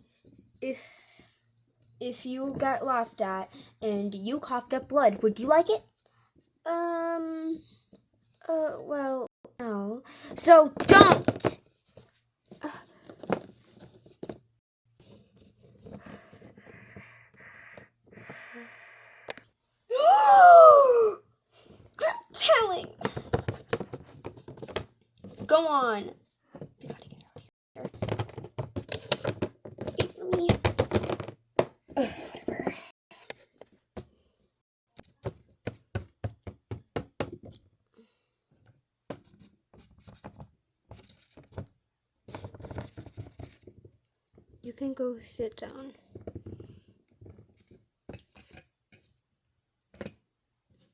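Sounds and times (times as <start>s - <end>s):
plastic toys clicking and tapping: 26.6s - 31.8s.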